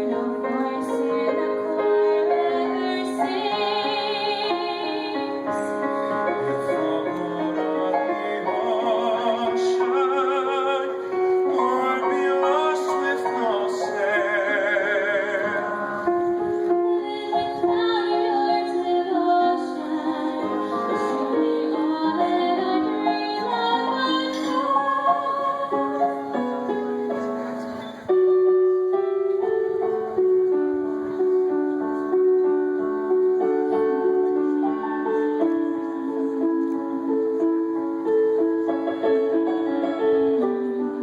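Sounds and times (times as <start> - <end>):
woman singing with vibrato: 0.0 - 15.9, 16.7 - 26.3, 33.7 - 37.7
piano accompaniment: 0.0 - 41.0.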